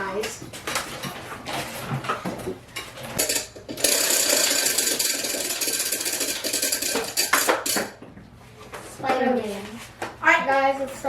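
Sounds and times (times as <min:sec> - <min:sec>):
prize wheel clicking: 0:03.2 - 0:07.8.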